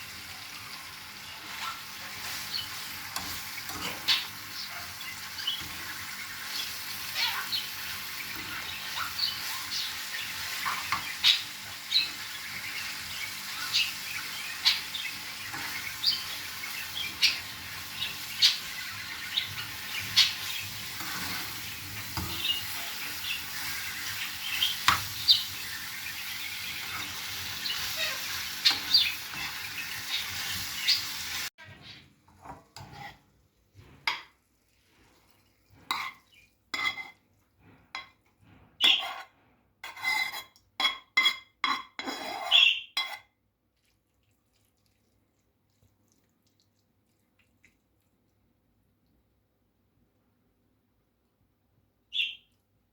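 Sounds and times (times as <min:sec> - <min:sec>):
food sizzling in a frying pan: 0:00.0 - 0:31.5.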